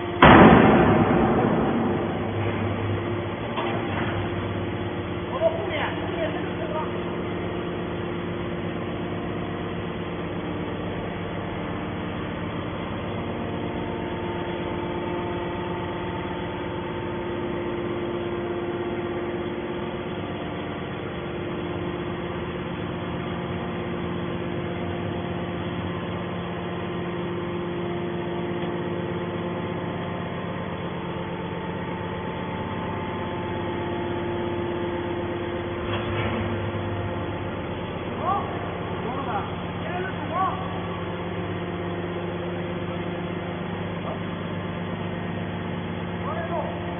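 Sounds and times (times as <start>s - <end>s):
hydraulic baler power unit droning: 0.0s - 46.9s
loud mechanical noise: 0.0s - 46.9s.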